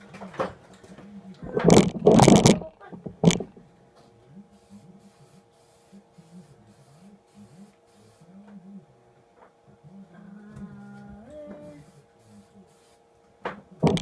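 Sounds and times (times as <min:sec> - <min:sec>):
aerosol spray can hissing: 0:04.6 - 0:08.3, 0:11.6 - 0:13.0.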